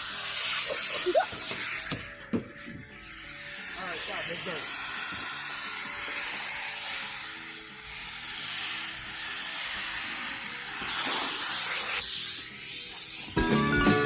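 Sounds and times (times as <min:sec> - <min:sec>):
vacuum hose sucking air: 0:07.9 - 0:13.4
background music: 0:09.3 - 0:14.0.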